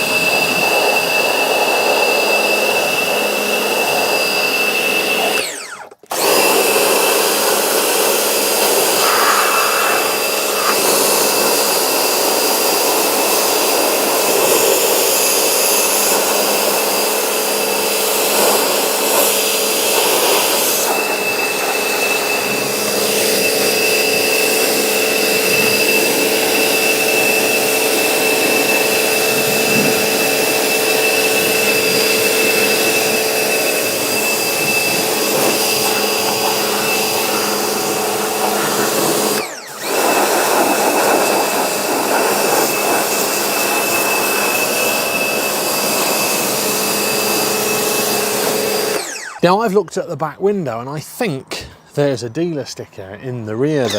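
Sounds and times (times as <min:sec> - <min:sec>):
pressure washer motor whine: 0:00.0 - 0:49.5
water jet hissing: 0:06.3 - 0:49.1.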